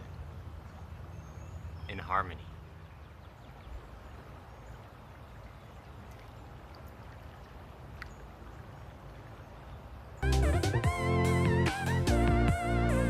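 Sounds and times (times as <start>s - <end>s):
guitar background music: 10.2s - 13.0s.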